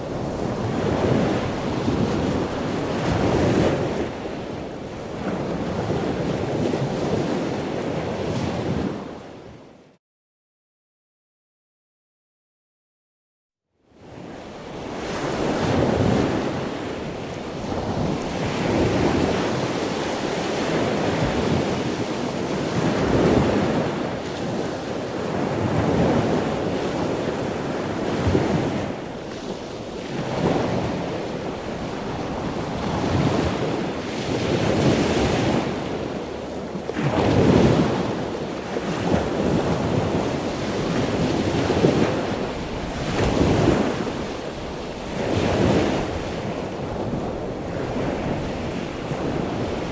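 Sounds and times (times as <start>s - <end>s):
ocean waves breaking: 14.7s - 49.9s.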